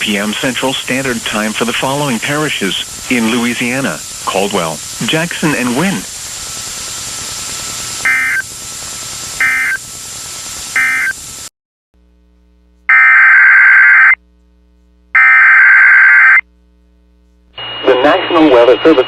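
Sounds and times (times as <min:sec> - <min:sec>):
radio hiss: 0:00.0 - 0:11.5, 0:17.6 - 0:19.0
buzzy digital data bursts: 0:00.2 - 0:11.3.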